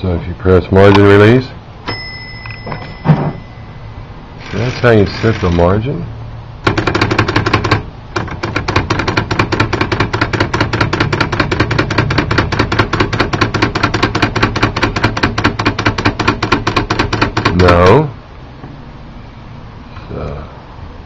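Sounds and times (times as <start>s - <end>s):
manual typewriter key strikes: 6.6s - 17.9s.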